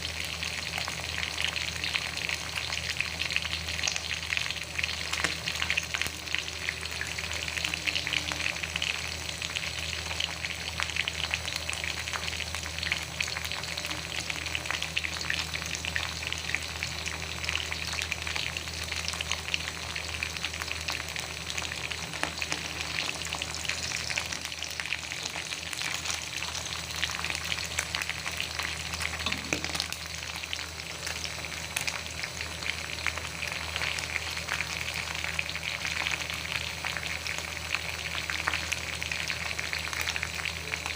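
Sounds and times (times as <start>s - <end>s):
food sizzling in hot oil: 0.0s - 40.9s.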